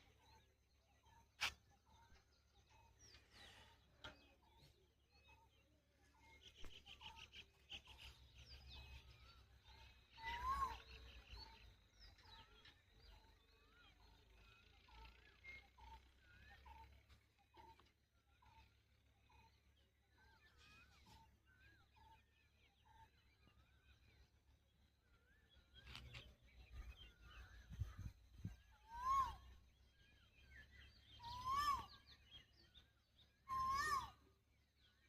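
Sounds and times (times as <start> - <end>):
bird trill: 0.0 - 35.0
faint birdsong: 0.0 - 35.0
rising bird call: 10.2 - 11.1, 28.7 - 29.6, 31.1 - 32.2, 33.4 - 34.3.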